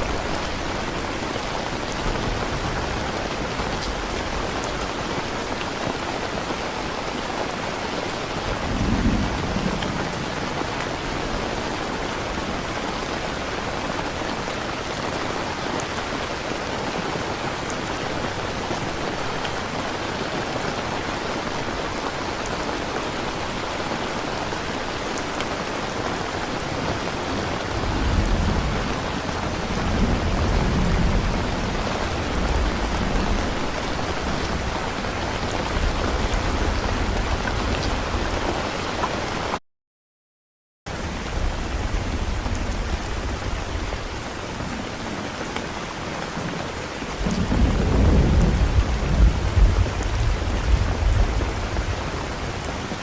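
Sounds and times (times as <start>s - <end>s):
steady rain falling: 0.0s - 39.6s, 40.9s - 53.0s
low rolling thunder: 8.4s - 11.5s, 27.4s - 38.5s, 41.0s - 45.4s, 47.2s - 53.0s.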